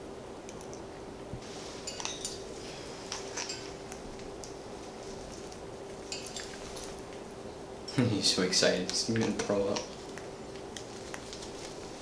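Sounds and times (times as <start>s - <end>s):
parrot beak clicking and crunching: 0.4s - 0.9s, 3.1s - 7.3s, 8.8s - 11.9s.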